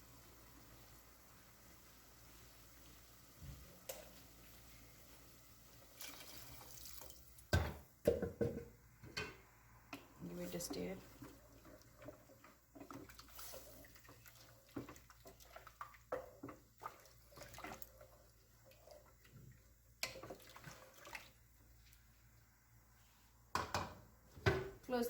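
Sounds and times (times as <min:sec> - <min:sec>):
water sloshing in pot: 0:05.7 - 0:09.4, 0:10.0 - 0:22.3
spoon and bones knocking on pot: 0:07.5 - 0:09.4.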